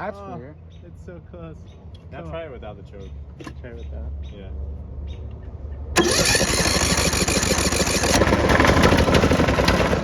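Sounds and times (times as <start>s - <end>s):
lawnmower engine cranking and running: 6.0s - 10.0s.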